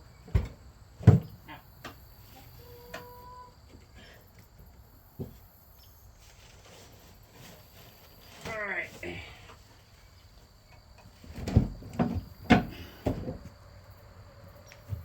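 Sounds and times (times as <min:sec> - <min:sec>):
crickets chirring: 0:00.0 - 0:15.0.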